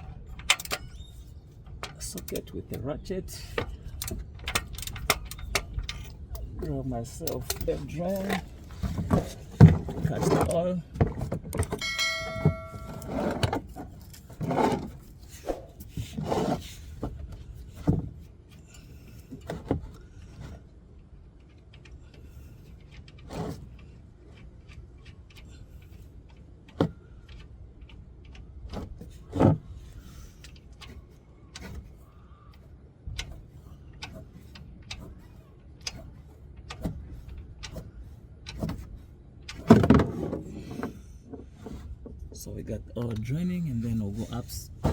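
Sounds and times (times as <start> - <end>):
low steady rumble: 0.0 - 44.9
hand tools knocking and clicking: 11.0 - 13.6.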